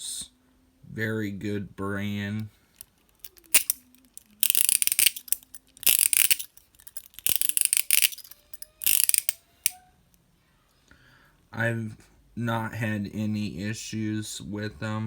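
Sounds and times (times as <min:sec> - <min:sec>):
handcuffs ratcheting clicks: 0:02.8 - 0:09.8.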